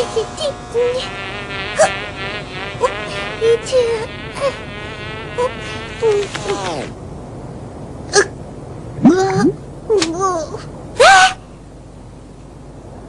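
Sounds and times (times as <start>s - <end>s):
cartoon fly buzzing: 0.0s - 7.0s.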